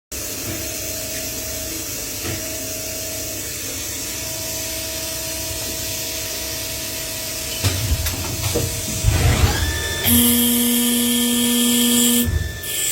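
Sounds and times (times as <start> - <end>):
machine hiss: 0.1 - 12.9.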